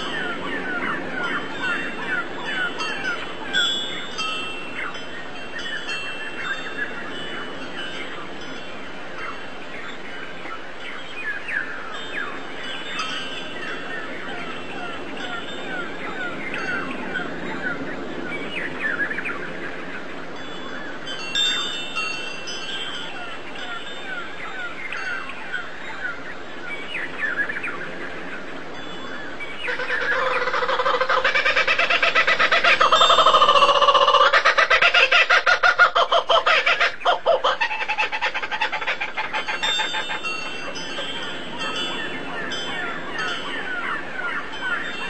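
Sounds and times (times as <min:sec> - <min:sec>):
birds chirping: 0:00.0 - 0:45.0
pulsing bird call: 0:29.6 - 0:45.0.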